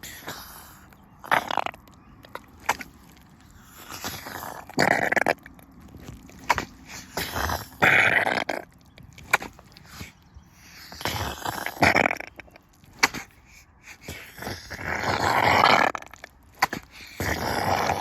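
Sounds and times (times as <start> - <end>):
boots squelching in mud: 0.4 - 15.2.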